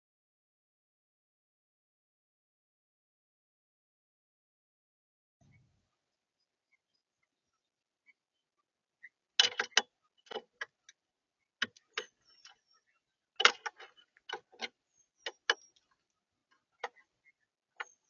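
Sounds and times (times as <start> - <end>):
faint high bird chirps: 5.4 - 18.0
beaks pecking at feeder: 9.0 - 18.0.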